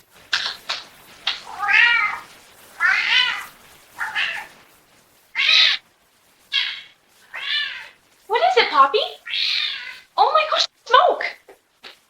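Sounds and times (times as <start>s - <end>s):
cat meowing: 1.3s - 4.5s, 5.4s - 5.8s, 6.5s - 8.0s, 9.2s - 10.7s.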